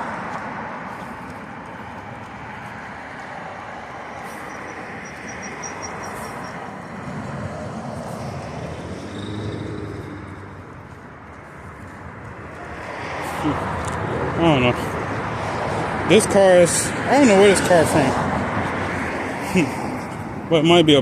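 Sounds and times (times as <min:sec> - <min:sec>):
passing car traffic: 0:00.0 - 0:21.0.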